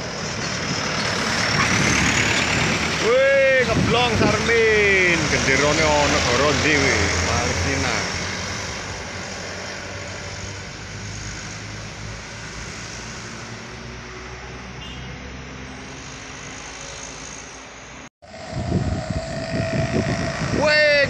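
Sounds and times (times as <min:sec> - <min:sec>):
large vehicle engine rumble: 0:00.0 - 0:12.0, 0:18.2 - 0:21.0
road noise: 0:00.0 - 0:21.0
steady hum: 0:18.2 - 0:21.0.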